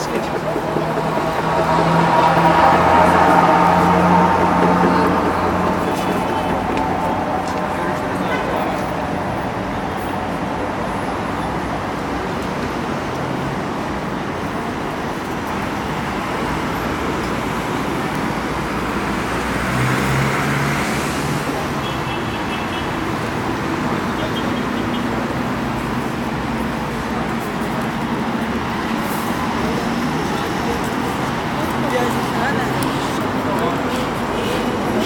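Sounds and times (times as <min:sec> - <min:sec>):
vehicle engine passing: 0:00.0 - 0:09.2
passing vehicles: 0:00.0 - 0:35.0.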